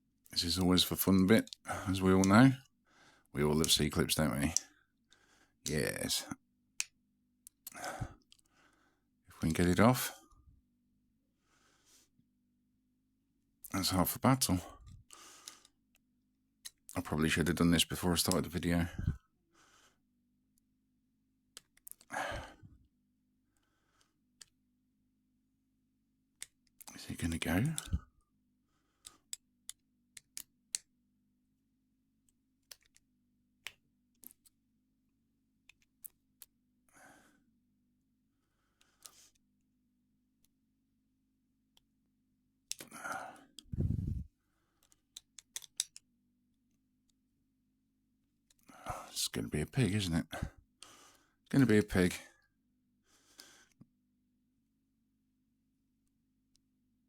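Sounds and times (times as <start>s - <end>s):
breathy sigh: 22.1s - 22.7s
tweezers metal clicks: 45.1s - 46.1s.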